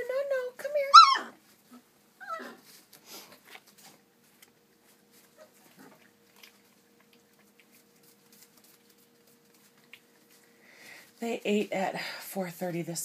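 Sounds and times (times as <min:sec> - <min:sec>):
puppy whimper: 0:02.2 - 0:02.6
puppies scuffling and clicking: 0:02.6 - 0:10.5.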